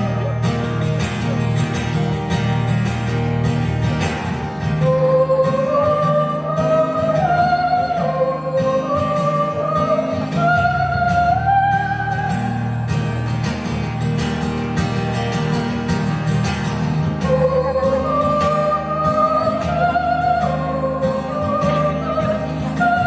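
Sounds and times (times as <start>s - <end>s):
acoustic guitar: 0.0s - 23.0s
wordless vocal melody: 3.8s - 13.5s, 16.9s - 23.0s.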